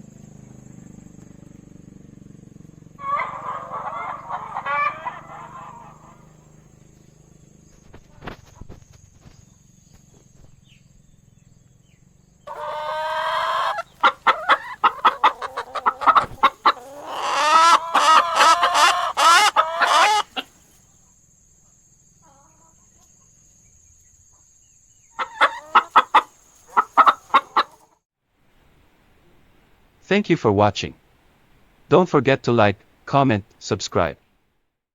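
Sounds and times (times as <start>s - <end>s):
chickens clucking: 3.0s - 10.5s, 12.5s - 20.9s, 22.2s - 23.6s, 24.3s - 28.0s.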